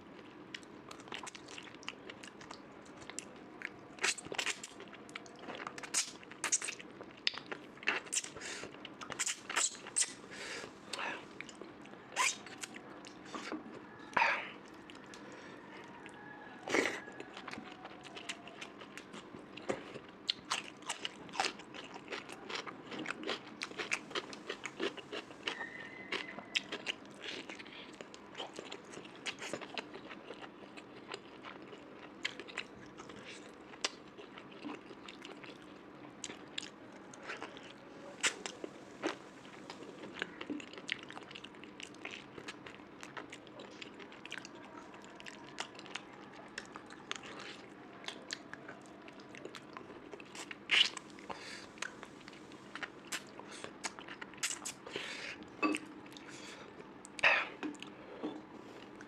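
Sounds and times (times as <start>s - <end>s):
person chewing food: 0.2s - 59.0s.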